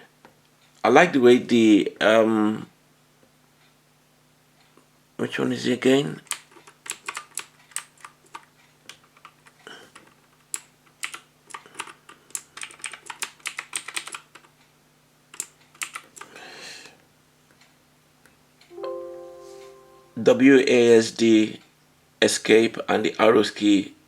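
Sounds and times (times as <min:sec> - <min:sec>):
clicky mechanical keyboard keys: 0:06.2 - 0:14.5, 0:15.3 - 0:16.3.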